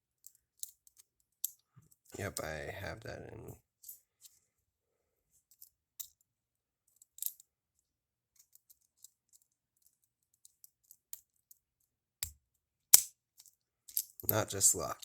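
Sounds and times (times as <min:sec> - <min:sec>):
metal clicks of lock picking: 0:13.0 - 0:14.4.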